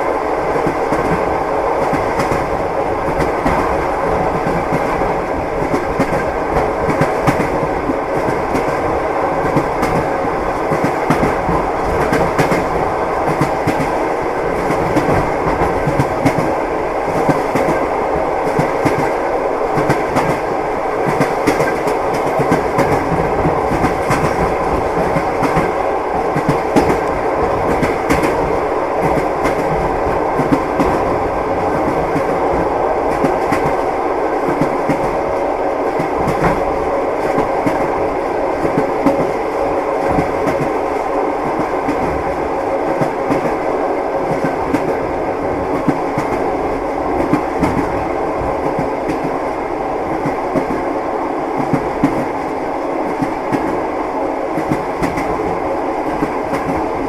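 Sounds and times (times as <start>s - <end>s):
train wheels clattering on rails: 0.0s - 50.9s, 51.6s - 53.8s, 54.5s - 57.0s.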